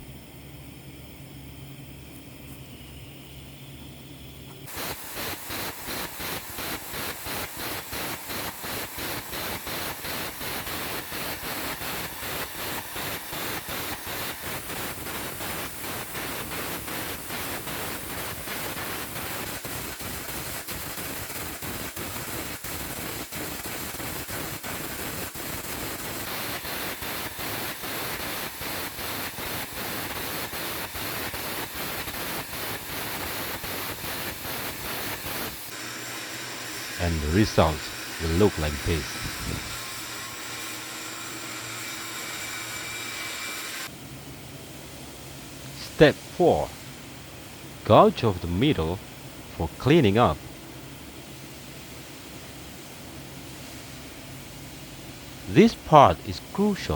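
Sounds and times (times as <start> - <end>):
compressed air jet hissing: 4.7 - 40.9.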